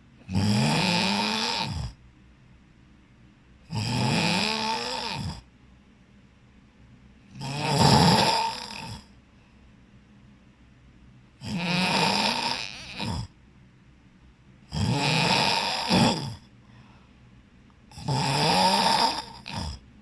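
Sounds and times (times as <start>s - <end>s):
person snoring heavily: 0.3s - 2.0s, 3.7s - 5.4s, 7.3s - 9.1s, 11.4s - 13.3s, 14.7s - 16.4s, 17.9s - 19.8s
quiet breaths: 3.5s - 13.6s, 14.2s - 20.0s.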